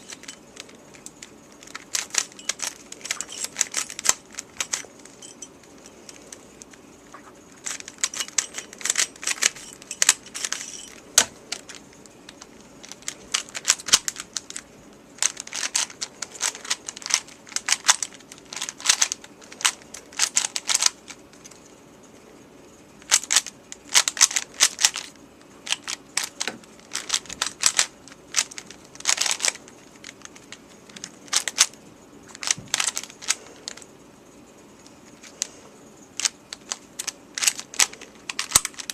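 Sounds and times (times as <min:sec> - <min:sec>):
plastic puzzle cube clicking: 0:00.1 - 0:04.8, 0:36.2 - 0:38.9.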